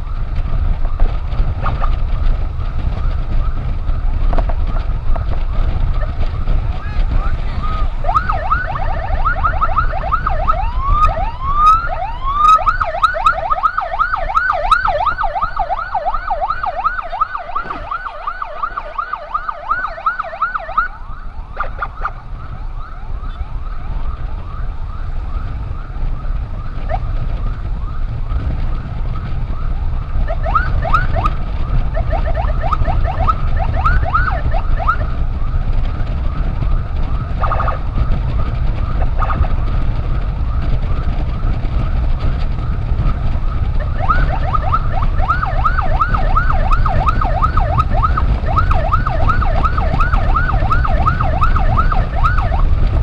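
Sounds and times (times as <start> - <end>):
steady low rumble: 0.0 - 53.0
electronic siren yelping: 5.5 - 26.0, 26.7 - 27.2, 28.7 - 35.1, 37.2 - 38.0, 38.8 - 39.5, 43.8 - 52.7.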